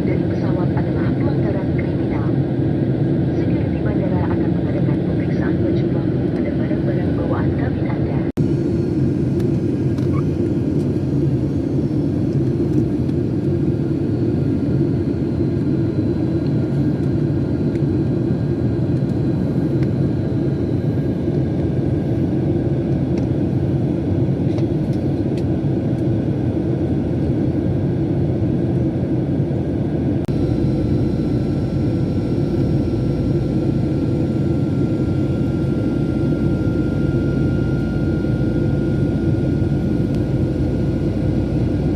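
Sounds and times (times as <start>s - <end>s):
airliner engine drone: 0.0s - 41.9s.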